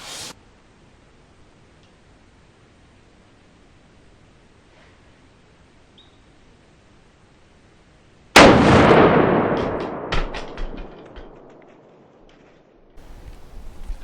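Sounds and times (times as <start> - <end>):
shotgun shot: 8.4 - 11.6.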